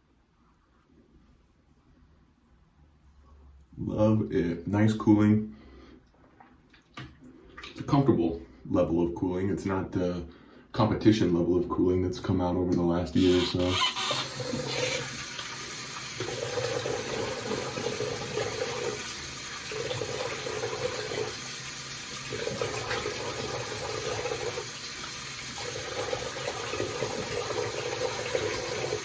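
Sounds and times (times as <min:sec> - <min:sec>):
tap water running into sink: 0:13.2 - 0:29.0.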